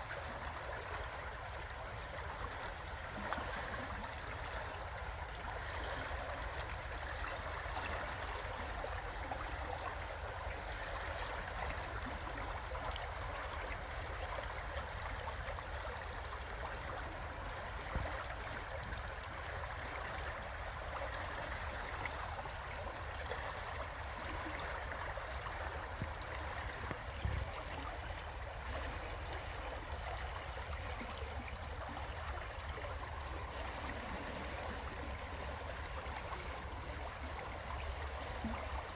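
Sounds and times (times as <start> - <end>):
river water flowing over rocks: 21.5 - 38.9.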